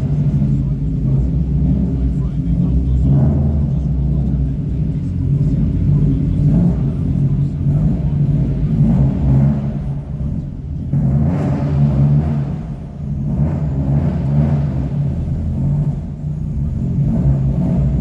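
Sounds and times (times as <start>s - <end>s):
car engine rumbling and revving: 0.0s - 18.0s.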